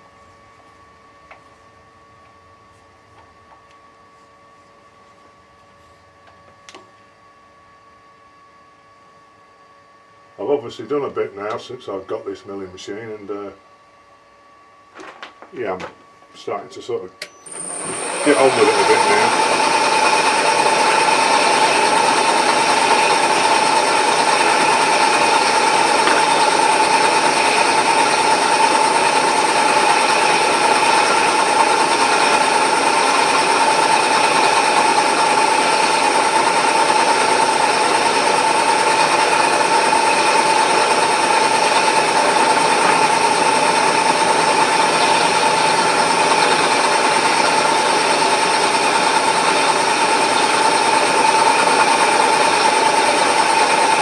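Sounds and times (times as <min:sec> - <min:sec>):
machine whine: 0:15.0 - 0:54.0
milling machine running: 0:17.3 - 0:54.0.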